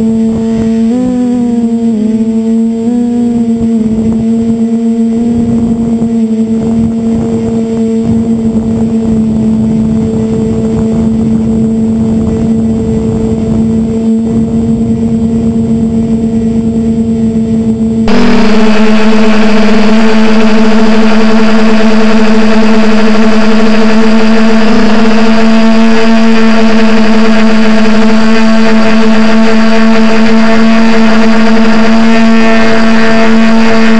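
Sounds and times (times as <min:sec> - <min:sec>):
drone motors humming: 0:00.0 - 0:33.9.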